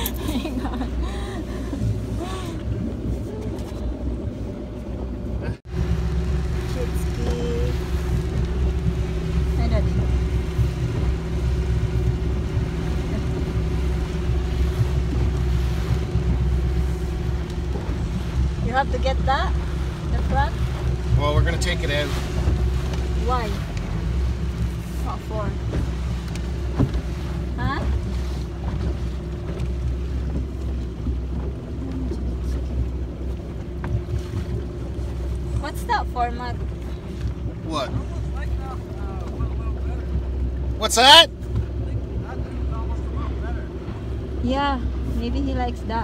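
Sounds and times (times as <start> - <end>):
wind buffeting microphone: 0.0 - 40.7
motorboat engine rumbling: 0.0 - 46.0
water noise: 0.0 - 46.0.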